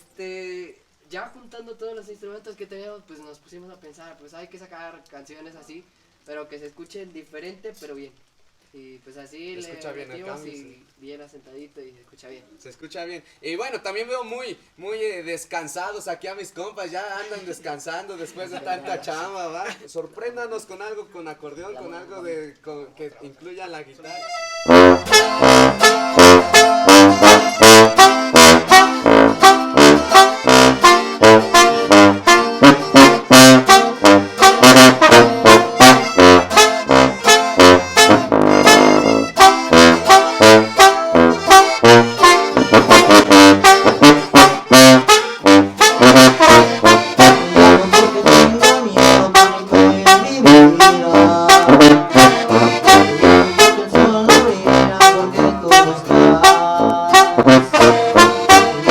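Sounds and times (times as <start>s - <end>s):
live band playing instrumental: 24.2s - 58.9s.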